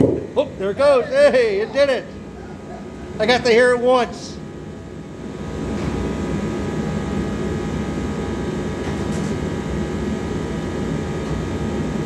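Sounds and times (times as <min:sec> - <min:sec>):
machine rumbling: 0:00.0 - 0:03.2.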